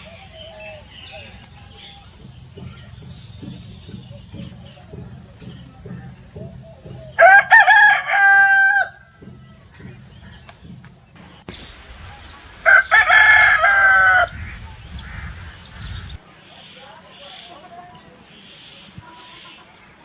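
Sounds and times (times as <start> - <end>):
rooster crowing: 7.1 - 9.0, 12.6 - 16.0.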